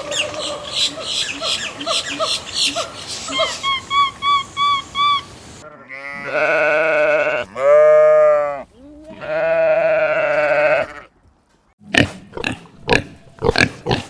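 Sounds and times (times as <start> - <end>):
sheep bleating: 5.6 - 11.1.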